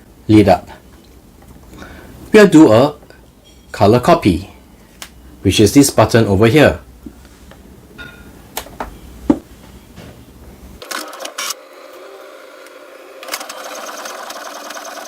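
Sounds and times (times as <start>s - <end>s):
printer mechanism whirring: 10.8s - 15.0s.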